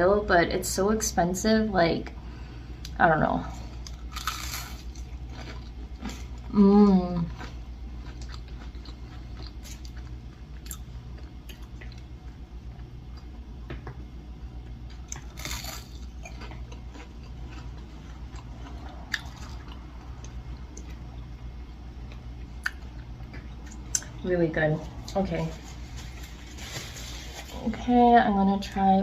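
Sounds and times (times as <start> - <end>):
crunchy chewing: 3.7 - 6.5, 7.2 - 13.3, 14.6 - 21.0.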